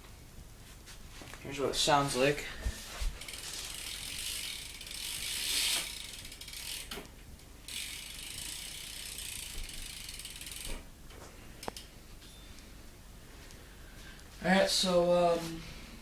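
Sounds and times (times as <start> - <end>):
bicycle hub ratcheting: 3.2 - 10.9, 11.6 - 11.9.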